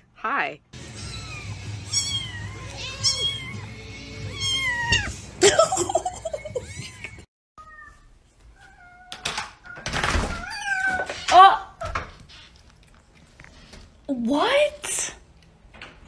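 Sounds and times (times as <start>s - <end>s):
cats meowing: 0.9s - 5.3s, 6.6s - 11.9s.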